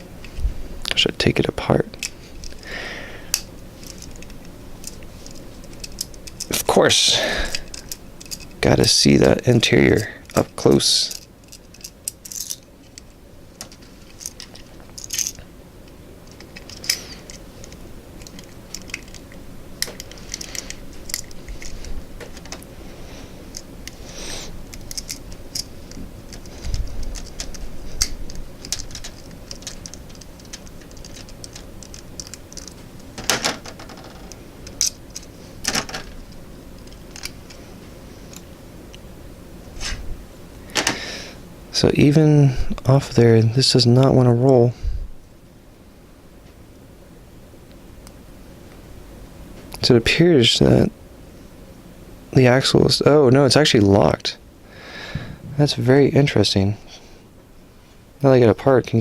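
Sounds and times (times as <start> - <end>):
small parts clicking and tapping: 3.3 - 6.7, 7.4 - 22.7, 24.6 - 37.6, 38.3 - 39.0.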